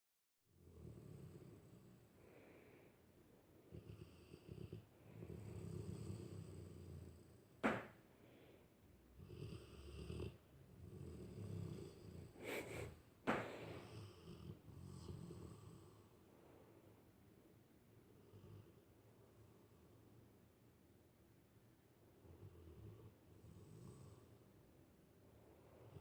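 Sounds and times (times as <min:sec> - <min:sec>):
dog snoring: 0:00.5 - 0:02.1, 0:03.6 - 0:07.6, 0:09.1 - 0:16.2, 0:18.2 - 0:20.0, 0:22.2 - 0:24.5.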